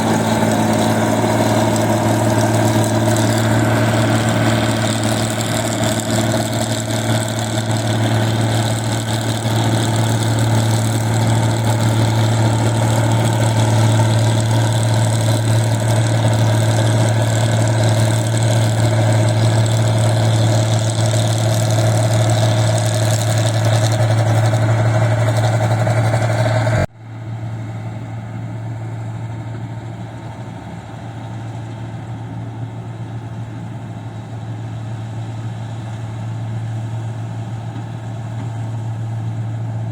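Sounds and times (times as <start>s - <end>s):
harvester engine running: 0.0s - 39.9s.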